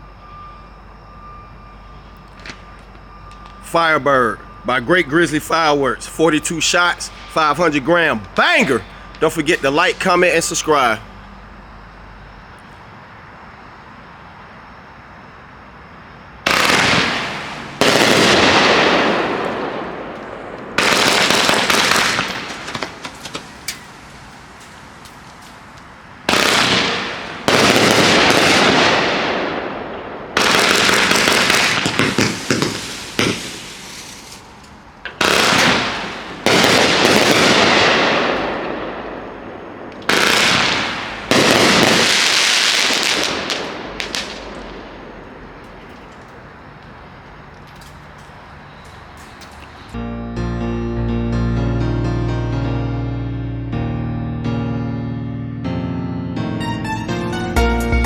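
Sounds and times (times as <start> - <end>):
firework shots blasting: 16.4 - 25.4, 26.2 - 45.6
firework fuse hissing: 20.8 - 26.8, 30.4 - 37.6.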